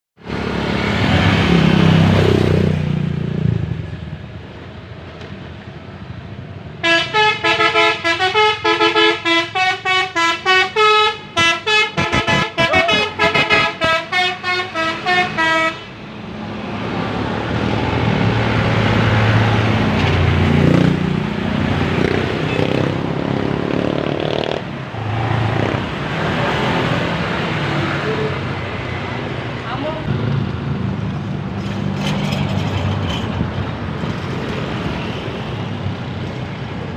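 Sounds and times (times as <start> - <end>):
horn playing tune of toots: 6.8 - 15.9.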